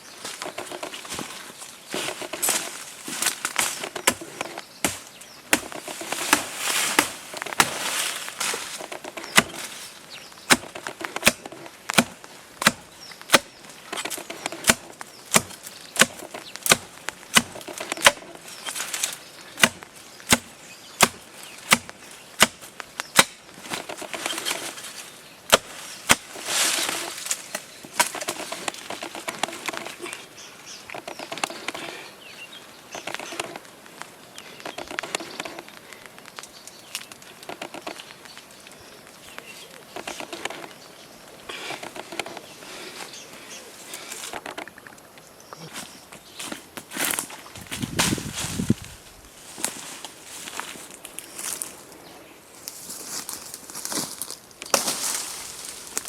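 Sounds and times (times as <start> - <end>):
rustling: 0.0 - 30.3, 52.6 - 56.0.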